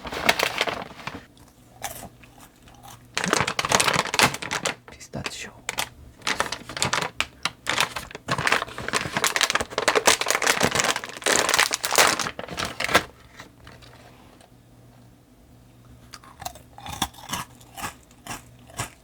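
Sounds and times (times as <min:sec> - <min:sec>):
plastic wrapper crinkling: 0:00.0 - 0:01.3, 0:02.8 - 0:14.4.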